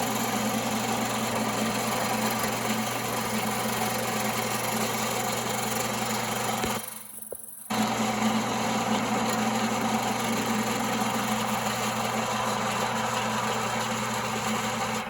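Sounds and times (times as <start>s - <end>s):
wood lathe motor hum: 0.0s - 15.0s.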